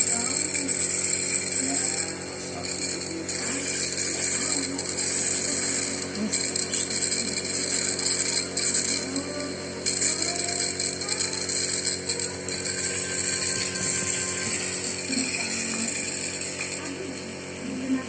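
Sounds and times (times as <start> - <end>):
nebulizer motor hum: 0.0 - 18.0.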